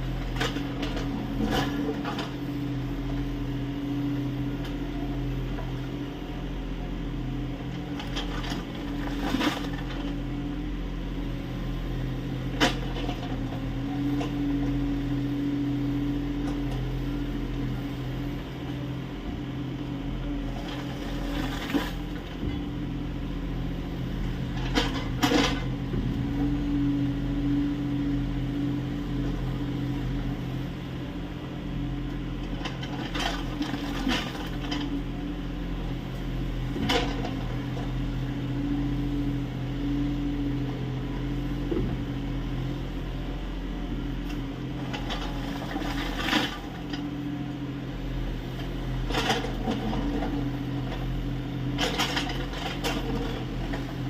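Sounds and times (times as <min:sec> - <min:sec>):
excavator diesel engine running: 0:00.0 - 0:54.0.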